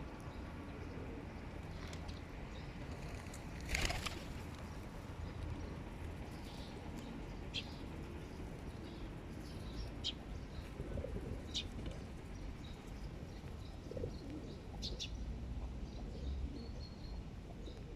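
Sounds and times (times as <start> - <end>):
pigeons cooing: 0.6 - 1.4, 10.0 - 17.9.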